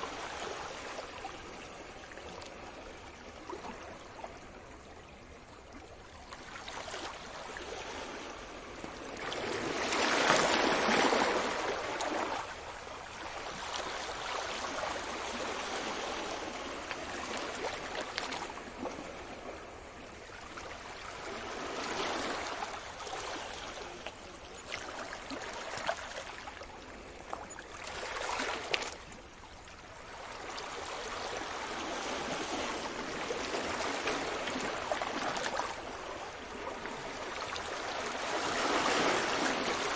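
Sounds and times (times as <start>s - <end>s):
sea waves washing onto shore: 20.8s - 39.9s.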